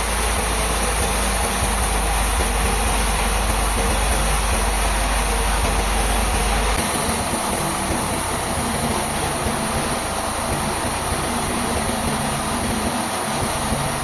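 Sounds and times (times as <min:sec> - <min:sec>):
sawmill machinery rumbling: 0:00.0 - 0:14.0.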